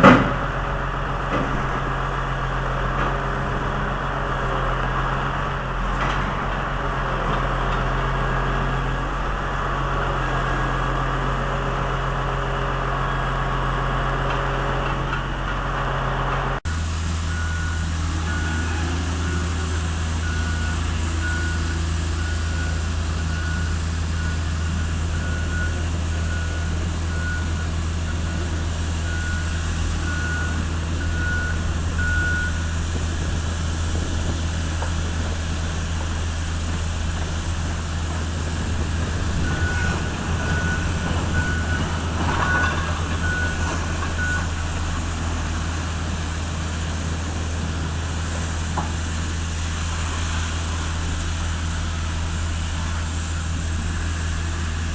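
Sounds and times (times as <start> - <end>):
diesel engine running: 0.0 - 54.9
backup alarm beeping: 17.2 - 32.8, 38.6 - 44.8.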